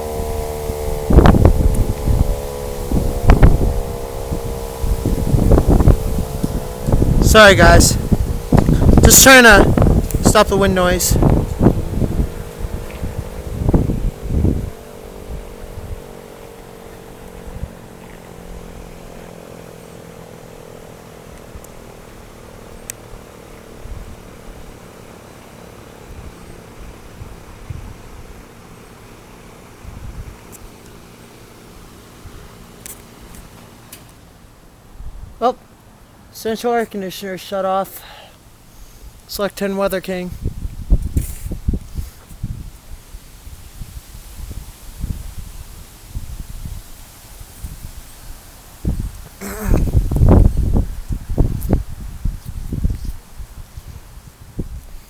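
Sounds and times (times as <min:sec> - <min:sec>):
siren winding down: 0:00.0 - 0:16.0
wind buffeting microphone: 0:00.0 - 0:28.8, 0:29.4 - 0:30.8, 0:35.0 - 0:35.4, 0:40.3 - 0:55.0.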